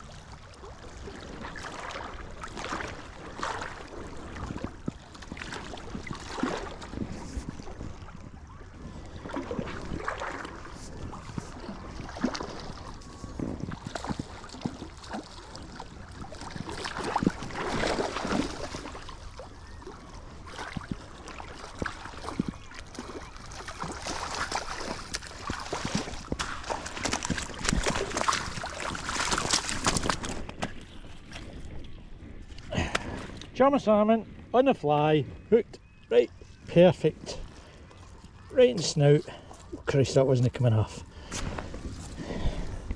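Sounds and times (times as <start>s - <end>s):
river water splashing: 0.0s - 33.7s.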